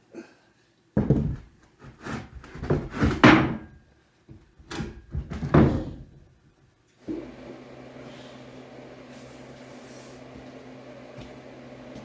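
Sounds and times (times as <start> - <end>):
plywood boards knocking: 1.0 - 3.7.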